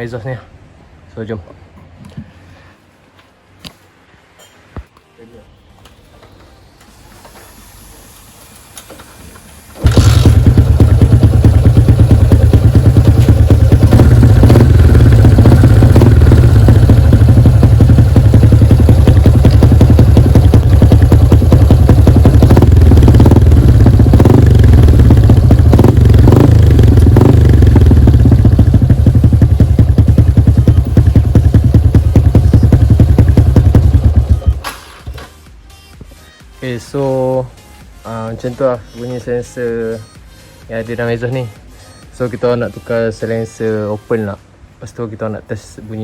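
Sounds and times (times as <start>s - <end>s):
motorcycle engine running loud: 9.8s - 34.6s.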